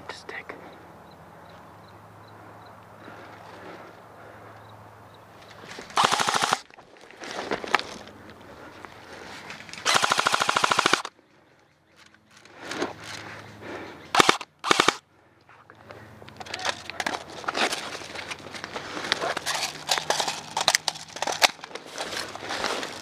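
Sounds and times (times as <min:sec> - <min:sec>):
airsoft gun full-auto bursts: 0:06.0 - 0:06.7, 0:09.8 - 0:11.1, 0:14.1 - 0:15.0.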